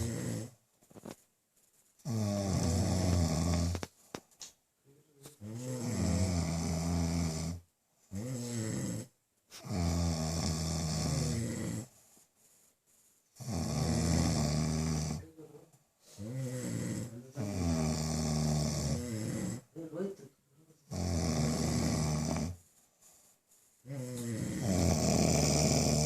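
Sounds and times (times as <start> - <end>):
man snoring: 0.0 - 0.6, 2.1 - 3.9, 5.4 - 11.9, 13.4 - 15.3, 16.2 - 19.7, 20.9 - 22.6, 23.9 - 26.0.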